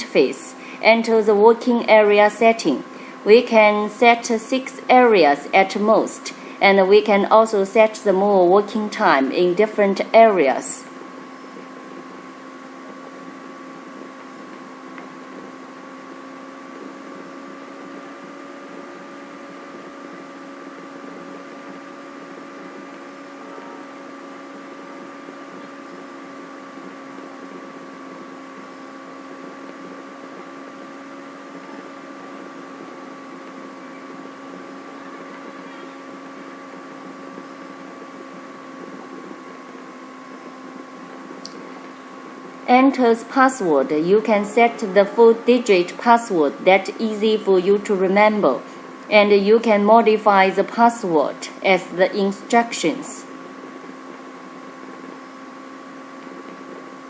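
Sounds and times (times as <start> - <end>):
faint electrical hum: 0.0 - 57.0.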